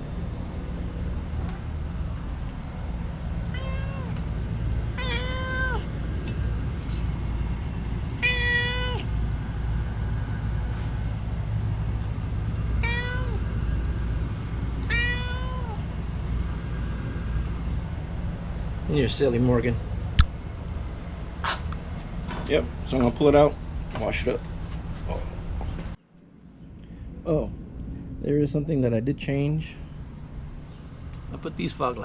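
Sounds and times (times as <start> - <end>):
low steady rumble: 0.0 - 32.0
cat meowing: 3.5 - 4.3, 4.9 - 5.9, 8.2 - 9.1, 12.8 - 13.5, 14.8 - 15.9.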